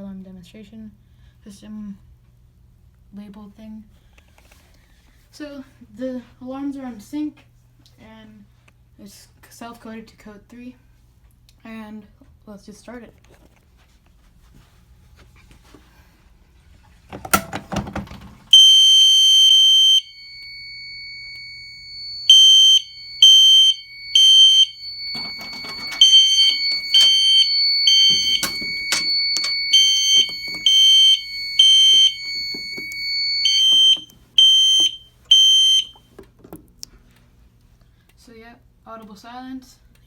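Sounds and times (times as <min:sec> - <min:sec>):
fire alarm horn pulses: 0:18.5 - 0:36.0
fire alarm pull station clatter: 0:21.4 - 0:36.0
steady high whine: 0:23.8 - 0:34.2.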